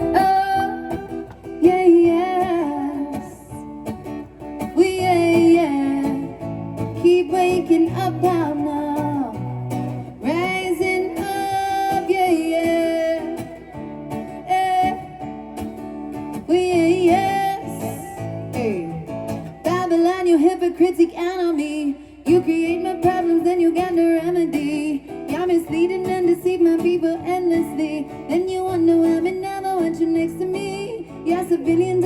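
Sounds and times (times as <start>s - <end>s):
acoustic guitar strumming: 0.0s - 32.0s
person singing: 10.2s - 13.7s.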